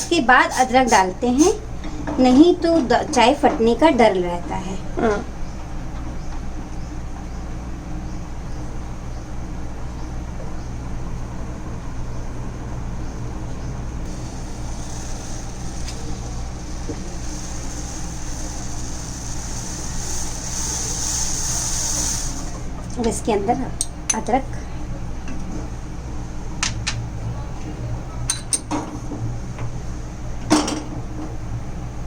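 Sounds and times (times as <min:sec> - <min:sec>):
tea boiling low rumble: 0:00.0 - 0:32.0
hissing bubbling: 0:14.1 - 0:22.9.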